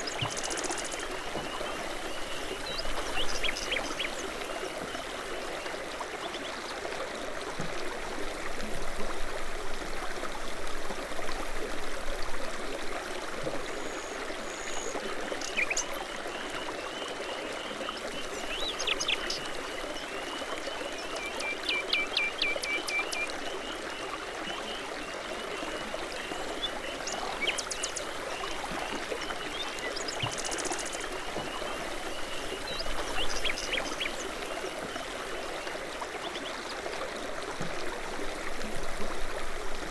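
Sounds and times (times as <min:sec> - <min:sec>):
songbirds singing and chirping: 0:00.0 - 0:06.6, 0:15.4 - 0:35.2
brook water running: 0:00.0 - 0:39.9.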